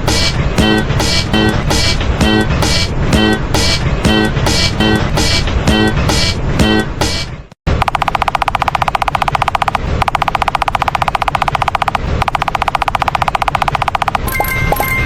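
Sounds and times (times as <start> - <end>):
rapid rattling clicks: 7.8 - 14.4.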